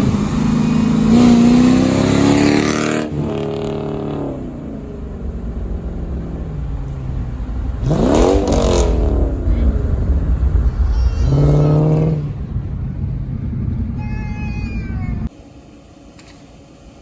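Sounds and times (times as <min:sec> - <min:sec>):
car engine revving: 0:00.0 - 0:15.3.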